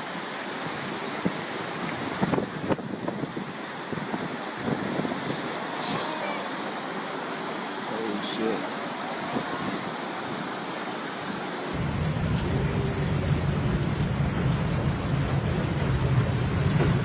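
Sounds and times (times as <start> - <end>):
heavy rainstorm rushing: 0.0 - 17.0.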